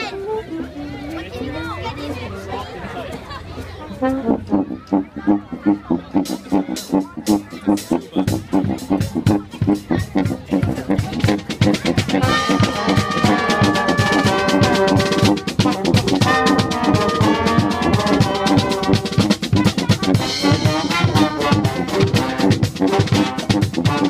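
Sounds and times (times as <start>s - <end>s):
brass horns melody: 3.8s - 24.0s
drum beat: 6.1s - 24.0s.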